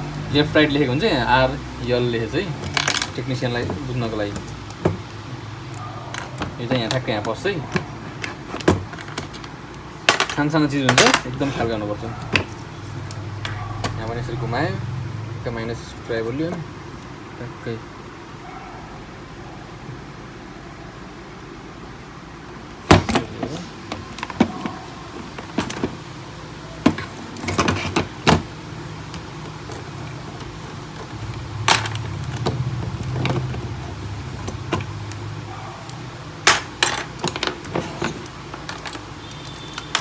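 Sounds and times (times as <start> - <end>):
clicks and knocks of printer parts: 2.5 - 14.1, 22.7 - 26.1, 26.8 - 40.0.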